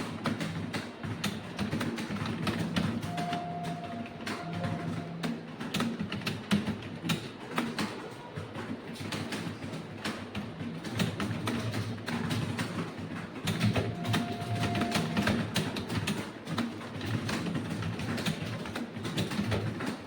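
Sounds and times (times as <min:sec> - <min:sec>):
keyboard typing: 0:01.6 - 0:06.8, 0:13.4 - 0:19.6.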